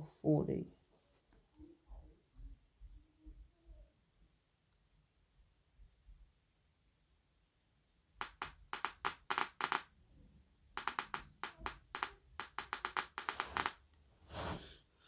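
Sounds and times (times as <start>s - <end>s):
sharp clicks: 8.2s - 9.9s, 10.8s - 13.8s.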